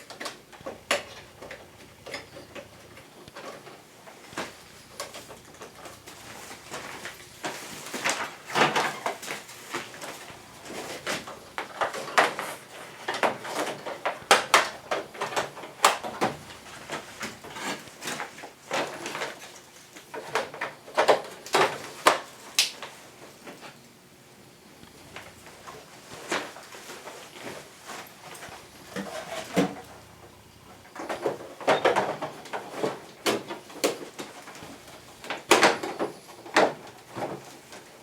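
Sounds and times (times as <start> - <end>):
air-conditioner parts clicking: 0.0 - 38.0.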